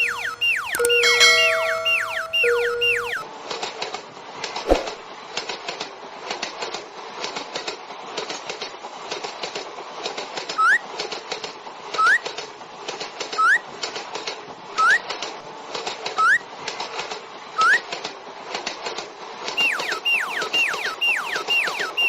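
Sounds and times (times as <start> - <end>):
short rising chirps: 0.0 - 3.2, 19.6 - 22.0.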